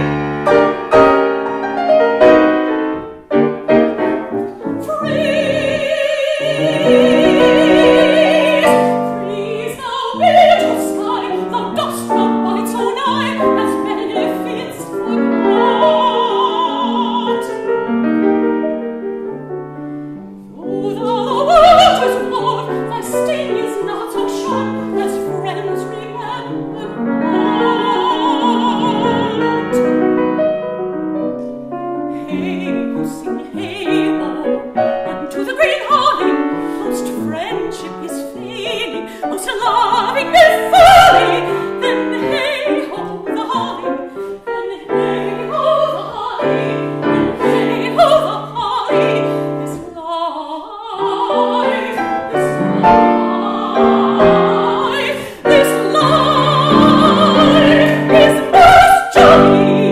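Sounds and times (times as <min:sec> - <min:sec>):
classical singer with vibrato: 0:00.0 - 0:59.9
piano accompaniment: 0:00.0 - 0:59.9.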